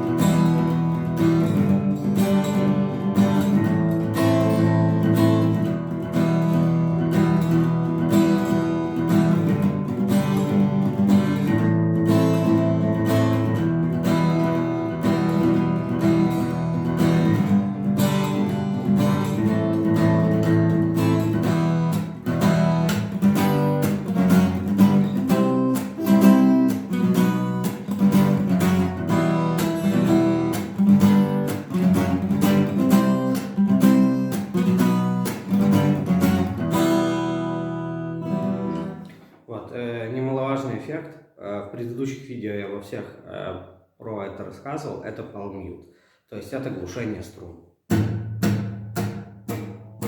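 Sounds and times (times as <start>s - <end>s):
acoustic guitar strumming: 0.0s - 39.3s, 47.9s - 50.0s.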